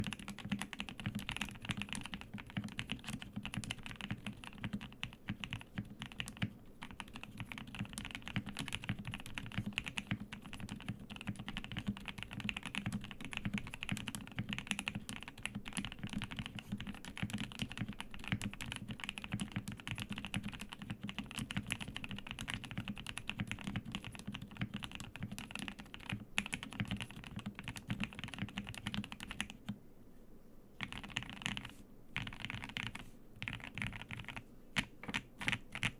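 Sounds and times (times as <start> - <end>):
fast mechanical keyboard typing: 0.0 - 29.8, 30.8 - 35.9.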